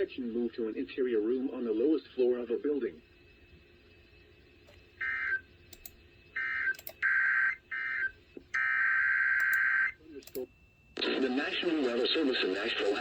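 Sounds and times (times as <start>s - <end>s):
sharp clicks: 5.7s - 6.0s, 6.7s - 7.0s, 9.4s - 9.6s, 10.2s - 10.5s.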